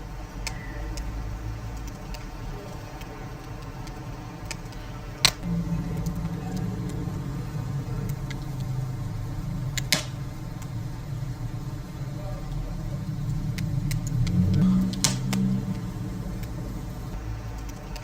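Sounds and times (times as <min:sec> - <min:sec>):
wood fire crackling: 0:00.0 - 0:18.0.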